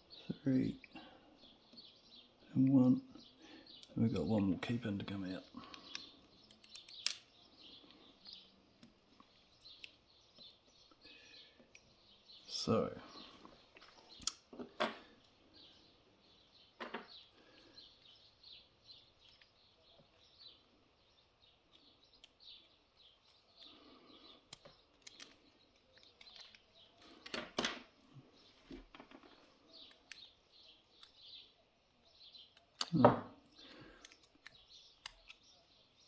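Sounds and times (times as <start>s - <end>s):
faint bird chirps: 0.0s - 14.3s, 15.0s - 27.3s, 28.1s - 36.0s
small lock parts clicking: 5.6s - 9.0s, 19.2s - 20.3s, 21.6s - 27.9s, 28.8s - 31.4s, 32.3s - 33.0s, 33.9s - 35.6s.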